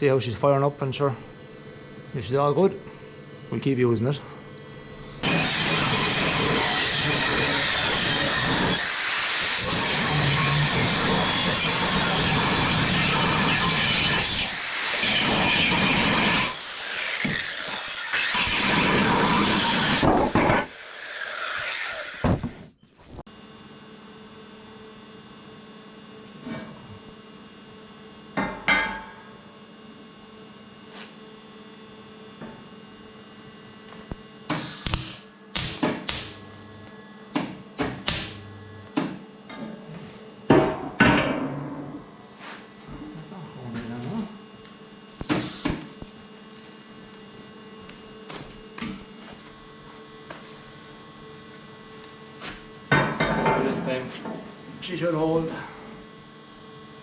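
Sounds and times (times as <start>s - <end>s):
welder humming: 3.8s - 24.7s, 33.9s - 39.3s, 43.9s - 53.1s
welding arc crackling: 5.2s - 23.3s, 34.1s - 36.9s, 37.9s - 38.8s.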